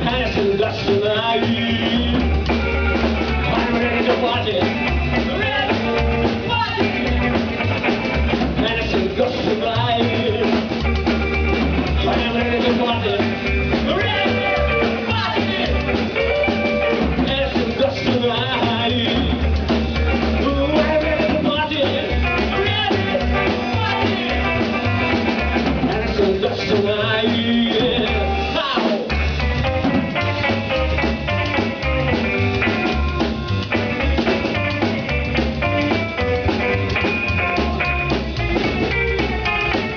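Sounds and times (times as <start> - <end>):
person singing: 0.0 - 7.8, 8.5 - 10.8, 11.8 - 19.5, 20.4 - 29.2
drum kit: 0.0 - 39.9
loud rock music: 0.0 - 39.9.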